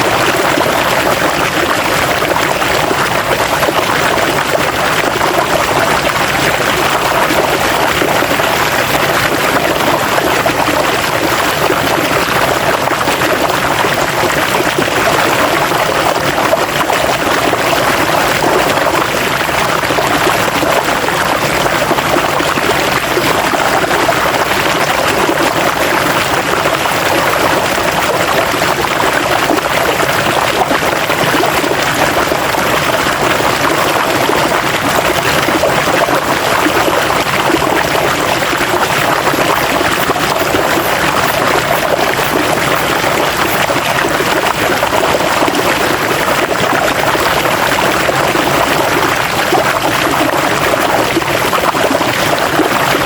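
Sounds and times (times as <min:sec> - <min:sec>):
river water rushing: 0:38.3 - 0:45.1.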